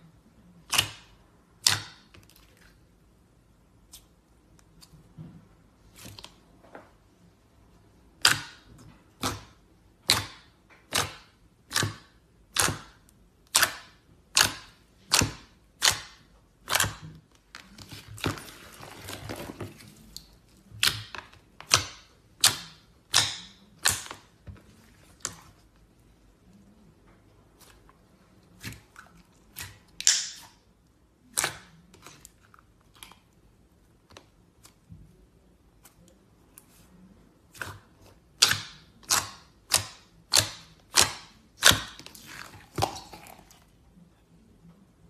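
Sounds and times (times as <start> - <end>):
wet pops and clicks of slime: 29.6 - 30.4.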